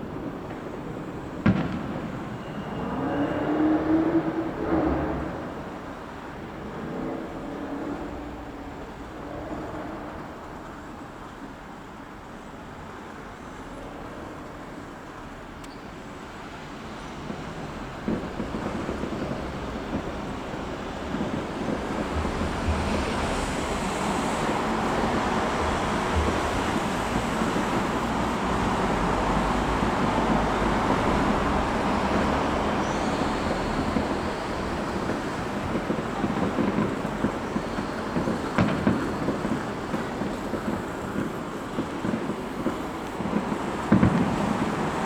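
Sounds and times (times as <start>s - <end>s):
deep fireworks booms: 0.0s - 6.9s, 17.2s - 45.0s
fireworks crackling and rumbling: 0.0s - 45.0s.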